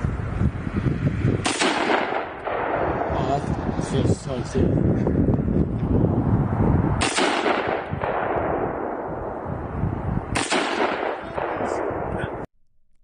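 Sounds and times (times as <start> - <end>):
rifle shots with rolling echo: 1.4 - 3.4, 7.0 - 9.5, 10.2 - 12.5.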